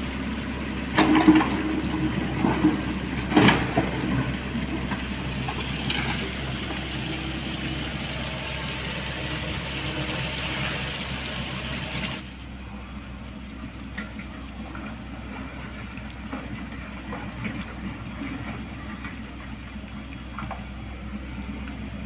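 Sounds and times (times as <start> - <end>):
construction machinery engine hum: 0.0 - 22.0
loud rushing grinding noise: 1.2 - 12.2.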